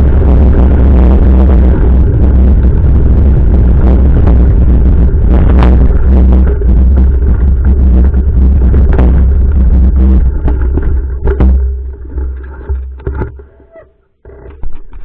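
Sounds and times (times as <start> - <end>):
vehicle driving rumble: 0.0 - 13.7
rattling and knocks: 5.4 - 15.0.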